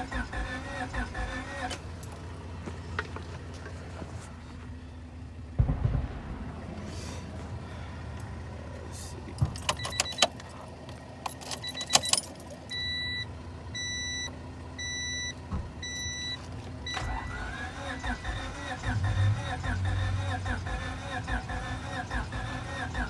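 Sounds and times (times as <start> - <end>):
steady low hum: 0.0 - 10.8
car keys jangling in ignition: 1.6 - 2.6, 9.3 - 13.2
heavy thump: 5.6 - 7.5
dashboard warning chime beeping: 9.4 - 18.4.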